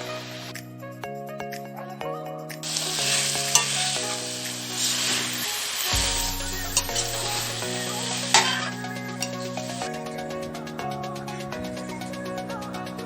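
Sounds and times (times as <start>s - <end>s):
meat frying in oil sizzling: 2.6s - 9.9s.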